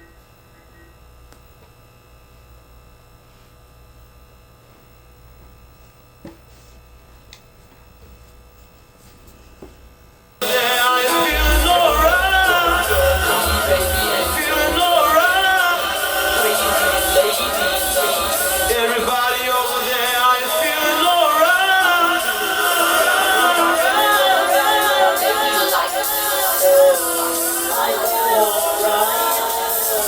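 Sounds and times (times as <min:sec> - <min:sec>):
low electrical hum: 0:00.0 - 0:10.5, 0:11.1 - 0:23.8
song with heavy bass over speakers: 0:10.4 - 0:30.0.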